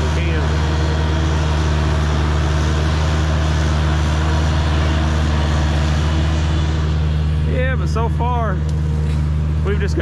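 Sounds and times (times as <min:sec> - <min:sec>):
diesel engine running: 0:00.0 - 0:10.0.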